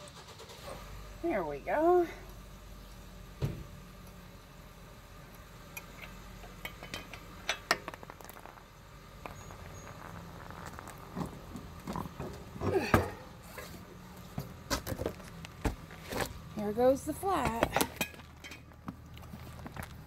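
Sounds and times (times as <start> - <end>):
metallic clinks of lug nuts: 5.7 - 8.1, 17.8 - 18.7.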